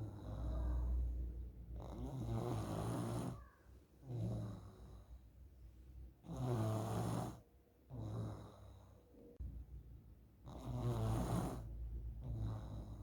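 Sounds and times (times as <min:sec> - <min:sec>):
child snoring: 0:00.0 - 0:05.2, 0:06.2 - 0:09.0, 0:10.4 - 0:13.0.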